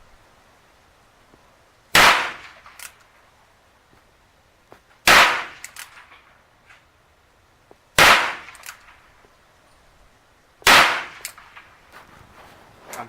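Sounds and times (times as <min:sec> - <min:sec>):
revolver gunshot: 0:02.0 - 0:02.6, 0:05.1 - 0:05.6, 0:08.0 - 0:08.7, 0:10.6 - 0:11.6.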